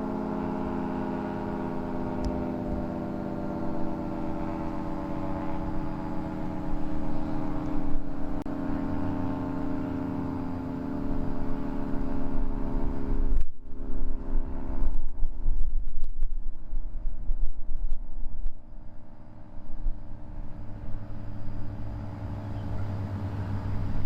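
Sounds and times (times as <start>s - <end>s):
wind buffeting microphone: 12.4s - 24.0s.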